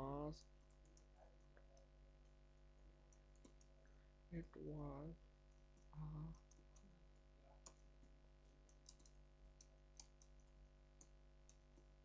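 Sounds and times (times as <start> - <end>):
low electrical hum: 0.0 - 12.0
keyboard keystrokes: 8.7 - 11.9.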